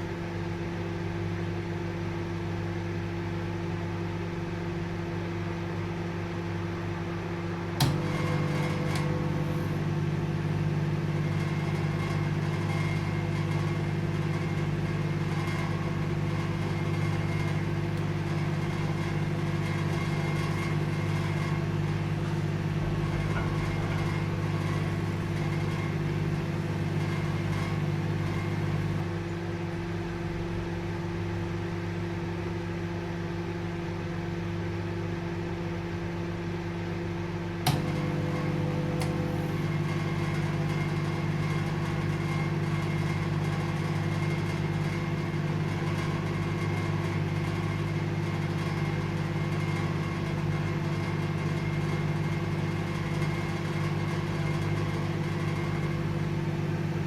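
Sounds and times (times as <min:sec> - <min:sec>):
microwave oven humming: 0:00.0 - 0:57.0
sharp click: 0:07.8 - 0:08.1.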